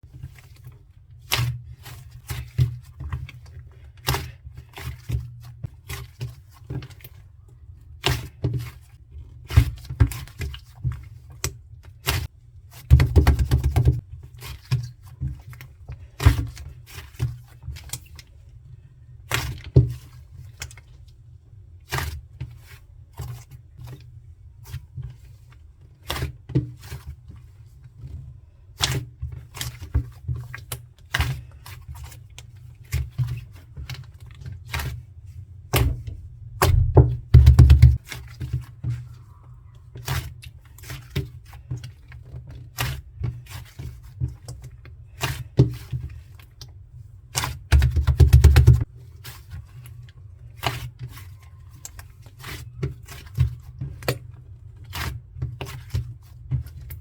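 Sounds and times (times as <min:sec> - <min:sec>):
steady low hum: 0:35.9 - 0:38.0.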